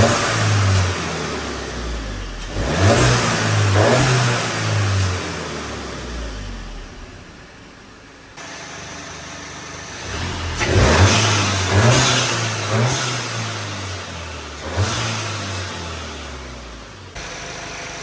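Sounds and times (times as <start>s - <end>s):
car engine idling: 0.0s - 2.7s, 5.0s - 14.6s, 15.6s - 18.0s
car engine revving: 0.0s - 7.4s, 9.9s - 18.0s.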